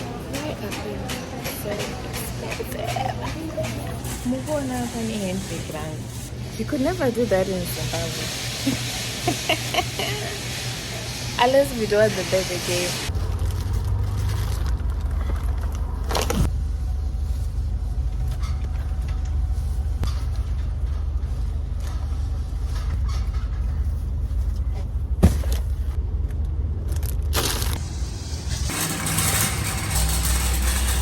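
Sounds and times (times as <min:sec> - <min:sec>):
engine and road noise rumble: 0:10.2 - 0:31.0.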